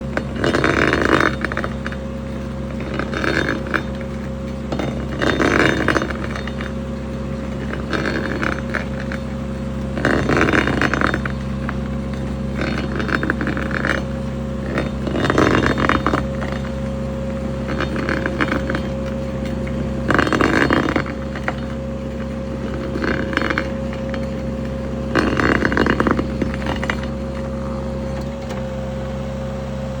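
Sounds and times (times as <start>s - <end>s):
engine hum: 0.0s - 30.0s
steady whine: 0.0s - 30.0s
stump grinder grinding: 0.0s - 30.0s.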